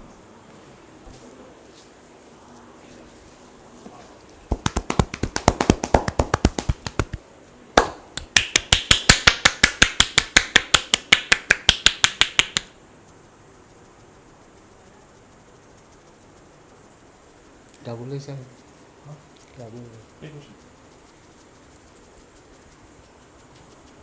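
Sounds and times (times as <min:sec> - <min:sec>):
rapid hand taps on a head: 0:04.5 - 0:07.2, 0:07.8 - 0:12.7
sharp slap: 0:04.5 - 0:07.2, 0:07.8 - 0:12.7.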